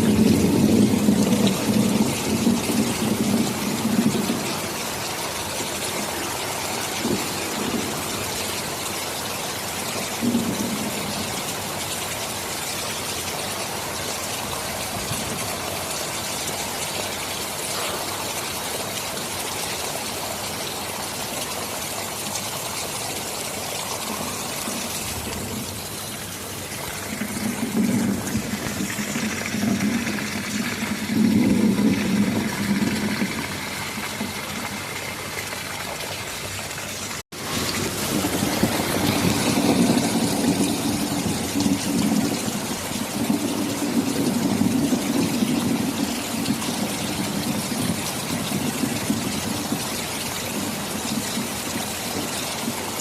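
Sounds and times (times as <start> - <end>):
thunder rumbling: 0.0 - 8.8, 10.0 - 11.7, 23.8 - 35.6, 37.3 - 52.8
heavy rain hissing: 0.0 - 53.0.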